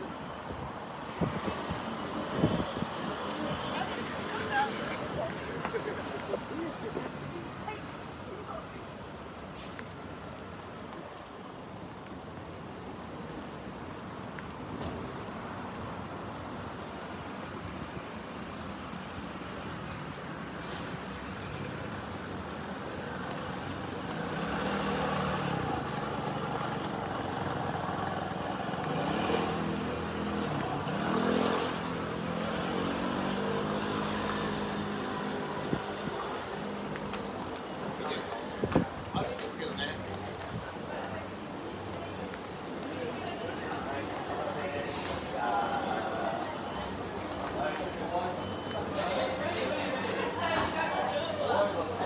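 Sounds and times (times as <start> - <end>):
street traffic: 0.0 - 52.0
bus diesel engine pulling away: 19.3 - 37.5.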